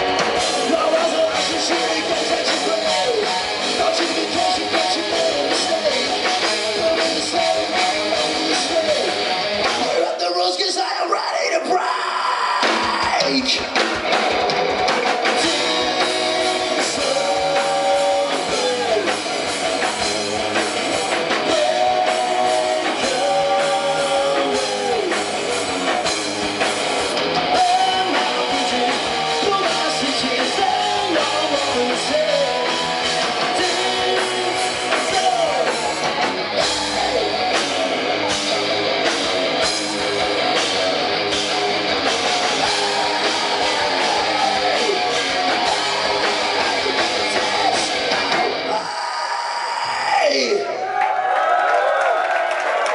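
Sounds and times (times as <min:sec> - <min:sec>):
rock band playing: 0:00.0 - 0:50.7.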